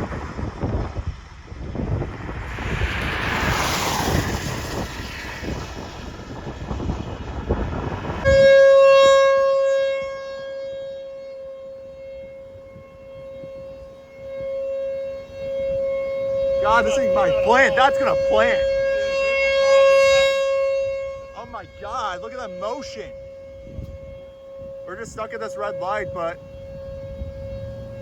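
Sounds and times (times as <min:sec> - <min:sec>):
wind buffeting microphone: 0:00.0 - 0:10.3, 0:11.8 - 0:28.0
tornado siren: 0:00.0 - 0:28.0.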